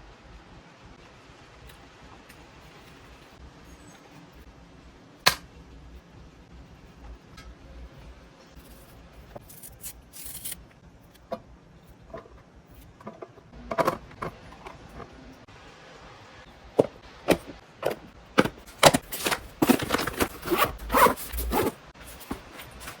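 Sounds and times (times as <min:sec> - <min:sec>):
scrapes and knocks: 0:11.2 - 0:15.2, 0:16.8 - 0:23.0
rasping scrapes and clatter: 0:18.4 - 0:23.0.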